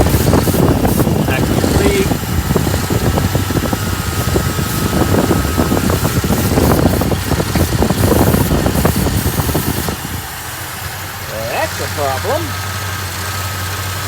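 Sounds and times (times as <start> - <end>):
engine idling rough: 0.0 - 14.0.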